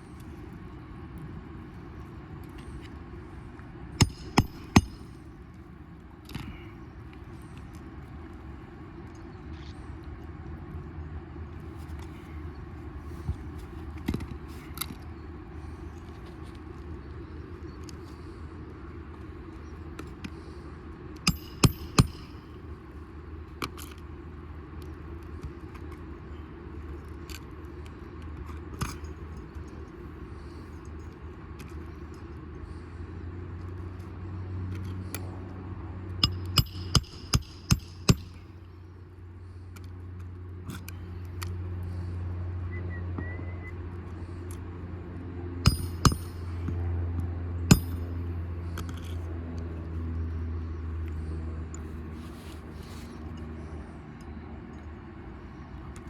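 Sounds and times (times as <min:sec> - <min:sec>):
steady low hum: 0:00.0 - 0:56.0
hammer driving nails: 0:36.2 - 0:38.4.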